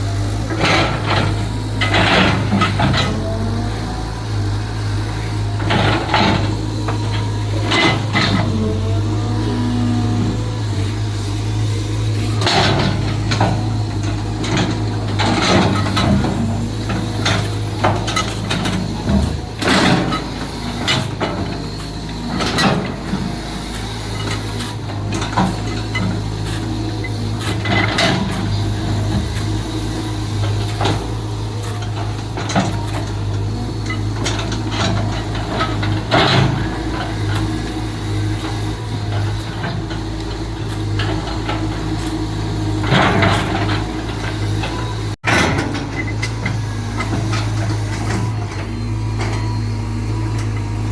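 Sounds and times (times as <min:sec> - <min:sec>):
excavator diesel engine running: 0:00.0 - 0:50.9.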